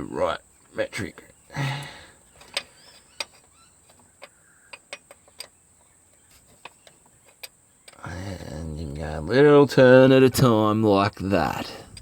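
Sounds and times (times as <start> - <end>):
spanner clicks and taps on metal: 2.4 - 8.0.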